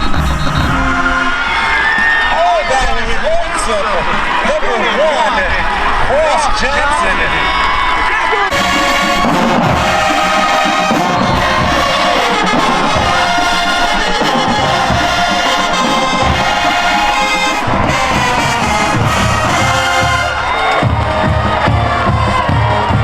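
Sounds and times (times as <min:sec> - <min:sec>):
brass band playing: 0:00.0 - 0:03.0, 0:08.4 - 0:23.0
crowd noise: 0:00.0 - 0:23.0.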